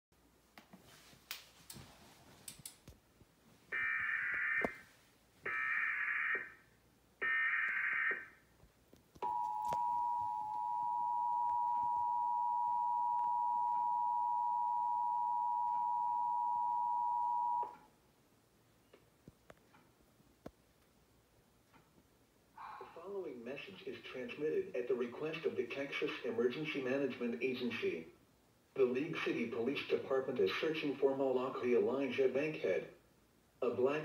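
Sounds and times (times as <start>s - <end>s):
two-tone attention signal: 9.2s - 17.7s.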